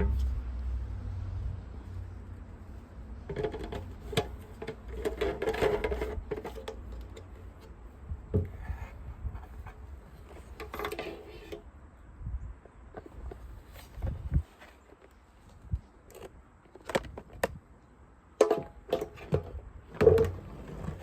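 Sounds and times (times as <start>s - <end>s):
hands handling plastic parts: 3.2s - 7.8s, 8.4s - 11.6s.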